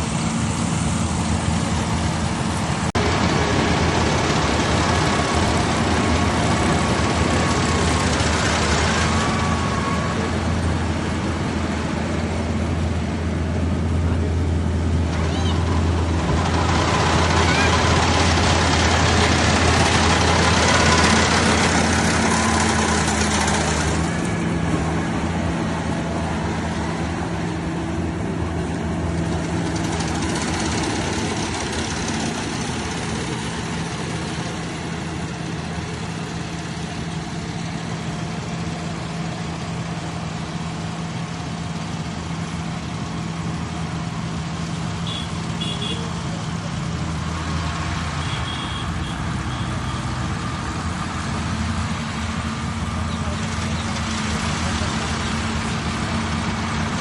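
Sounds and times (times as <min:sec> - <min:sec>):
harvester engine running: 0:00.0 - 0:57.0.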